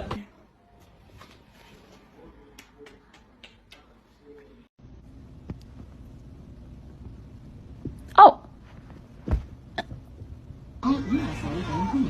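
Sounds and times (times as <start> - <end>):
steady low hum: 4.8 - 10.9.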